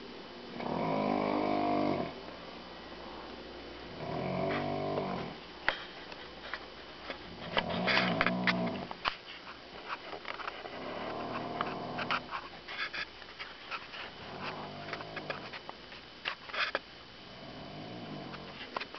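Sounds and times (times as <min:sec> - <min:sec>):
person snoring: 0:00.6 - 0:02.2, 0:03.9 - 0:05.4, 0:07.4 - 0:08.9, 0:17.3 - 0:18.6.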